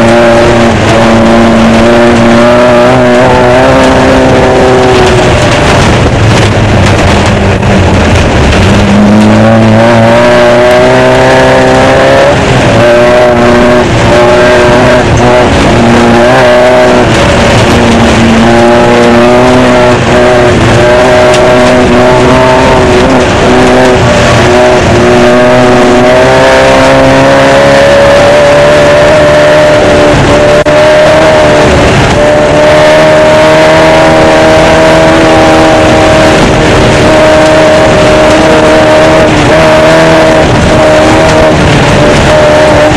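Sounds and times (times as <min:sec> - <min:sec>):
tyre gravel and wind noise: 0:00.0 - 0:27.2
race car engine revving: 0:00.0 - 0:42.9.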